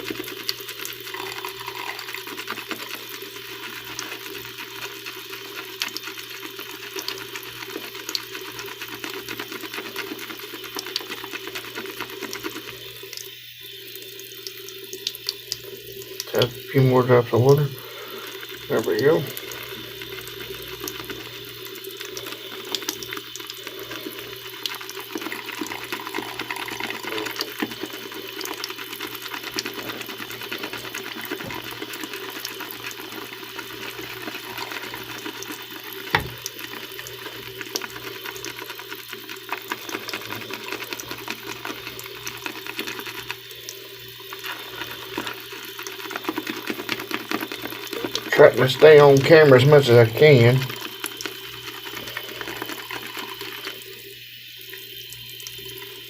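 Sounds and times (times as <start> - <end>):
shaving brush swishing lather: 0.0 - 12.8, 17.4 - 43.5, 44.2 - 54.0.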